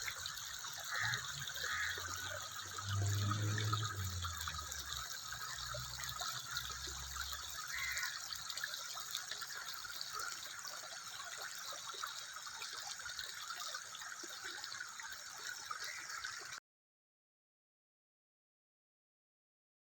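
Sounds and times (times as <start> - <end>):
water droplets ticking: 0.0 - 12.4
water trickling: 0.0 - 16.6
low rumble: 2.7 - 4.8.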